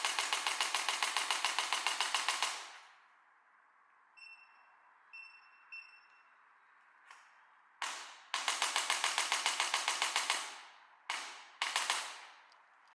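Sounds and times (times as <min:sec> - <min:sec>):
short electronic beeps: 0:04.2 - 0:06.5.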